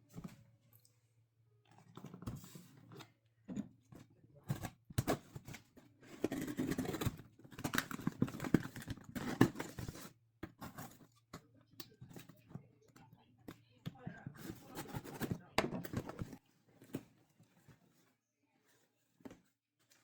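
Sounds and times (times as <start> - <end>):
packaging scraping and tearing: 5.2 - 10.1.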